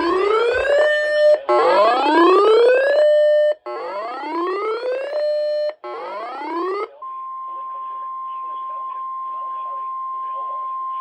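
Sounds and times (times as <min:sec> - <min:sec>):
electronic whoop alarm tone: 0:00.0 - 0:07.0.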